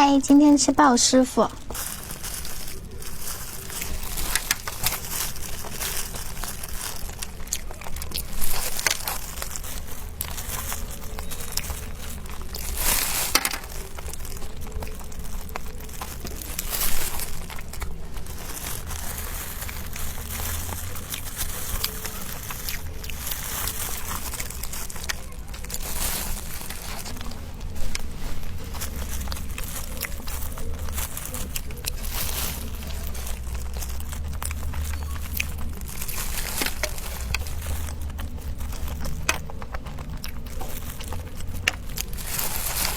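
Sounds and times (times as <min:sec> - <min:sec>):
packaging crinkling and rustling: 0:00.0 - 0:42.9.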